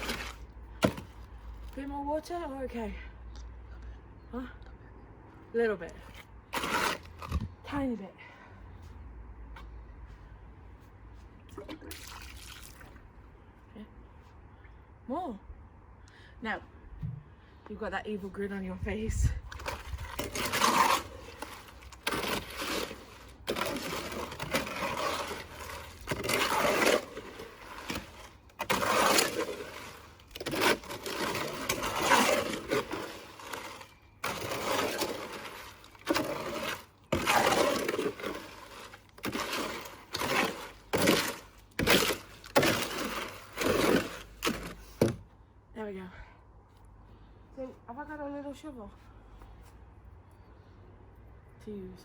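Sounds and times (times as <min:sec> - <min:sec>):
wet cement being stirred: 0:00.0 - 0:01.8, 0:06.5 - 0:07.5, 0:19.4 - 0:45.2.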